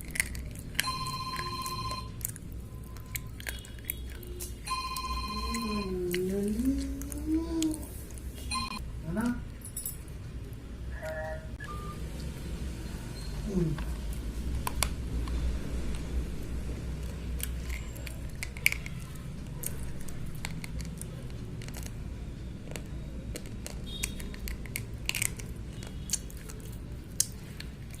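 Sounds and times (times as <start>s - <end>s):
slate pencils crunching: 0.0s - 8.2s, 22.6s - 28.0s
low steady hum: 0.0s - 28.0s.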